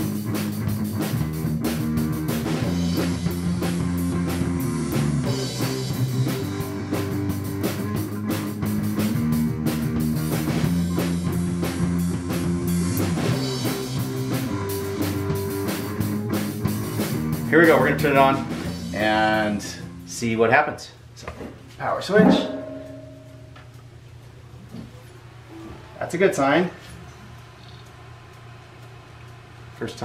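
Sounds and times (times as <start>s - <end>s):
rock music with guitar and drums: 0.0s - 20.1s.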